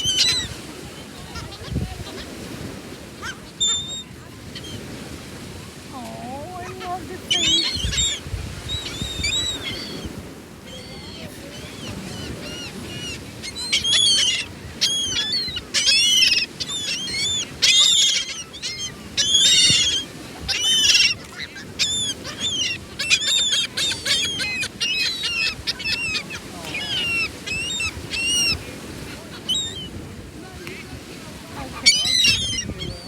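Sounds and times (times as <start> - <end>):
seagulls squawking: 0.0 - 2.6, 3.2 - 4.9, 6.4 - 30.1, 31.5 - 33.0.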